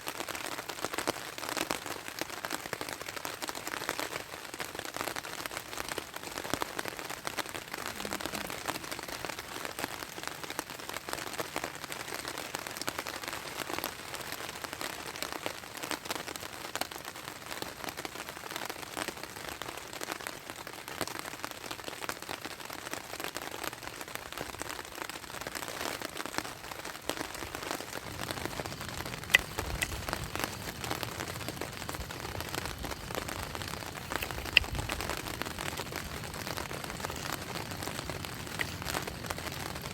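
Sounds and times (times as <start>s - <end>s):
rain pattering: 0.0s - 39.9s
sharp clicks: 28.4s - 30.6s, 34.0s - 35.2s.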